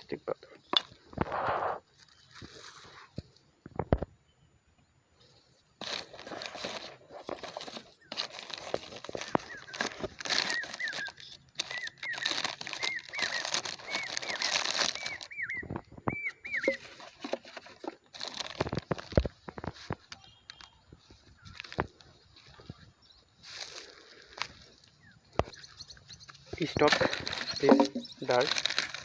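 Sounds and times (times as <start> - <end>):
plastic crinkling: 5.8 - 15.8, 16.6 - 20.7, 26.3 - 29.0
bird chirping: 9.1 - 17.4, 20.2 - 21.6, 24.7 - 28.9.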